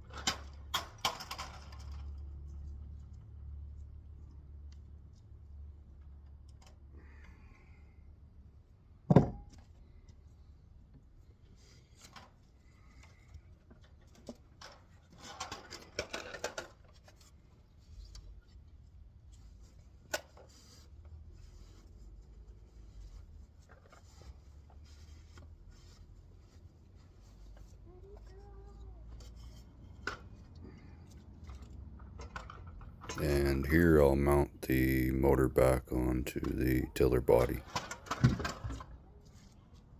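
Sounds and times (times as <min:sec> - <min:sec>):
steady low hum: 0:33.1 - 0:37.6.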